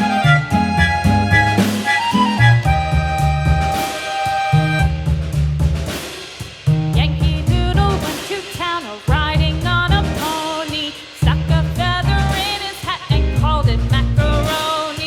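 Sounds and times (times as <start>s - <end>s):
upbeat song with vocals: 0.0s - 5.1s, 6.4s - 15.0s
bass and drums: 0.0s - 15.0s.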